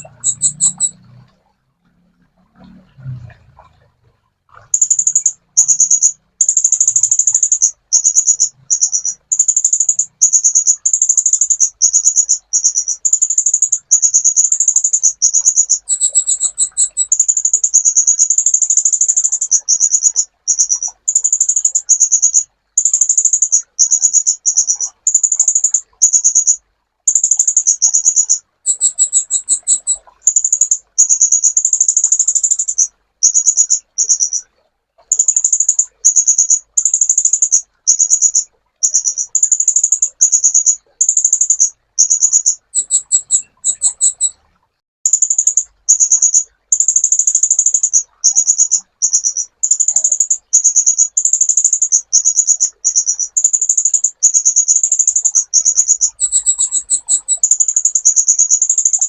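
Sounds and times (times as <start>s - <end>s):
sunbird trilling song: 0.0s - 1.2s, 4.7s - 34.4s, 35.1s - 44.4s, 45.1s - 59.0s.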